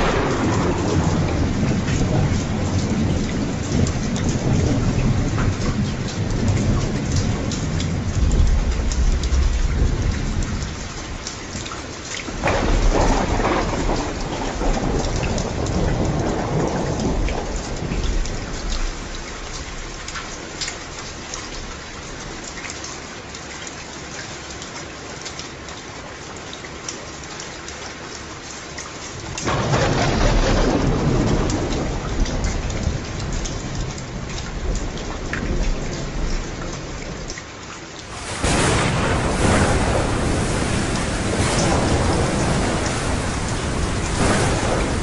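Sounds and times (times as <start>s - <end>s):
thunder clap: 0.0s - 10.8s, 12.3s - 19.2s, 29.4s - 37.3s, 38.0s - 45.0s
thunder rumbling: 0.0s - 10.8s, 12.3s - 20.0s, 29.4s - 37.3s, 38.1s - 45.0s
rain drops pattering: 0.0s - 45.0s.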